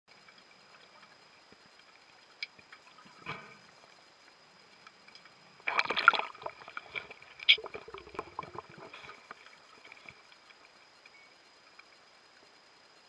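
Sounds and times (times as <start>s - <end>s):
small clicks: 0.1s - 5.4s
water sloshing and bubbling: 0.2s - 11.2s.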